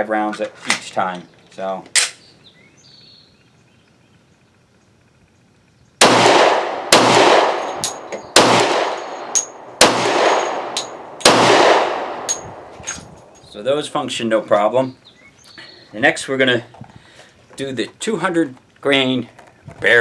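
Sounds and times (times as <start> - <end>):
pistol shots: 6.0 - 12.7
metallic clink: 7.6 - 9.6, 10.2 - 11.3, 12.2 - 13.5.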